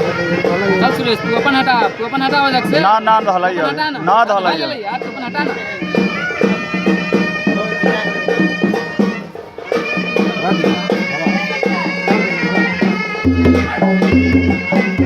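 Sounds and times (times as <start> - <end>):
quick drum beats: 0.0 - 15.0
reed pipe melody: 0.0 - 15.0
deep booming drum beat: 5.0 - 15.0.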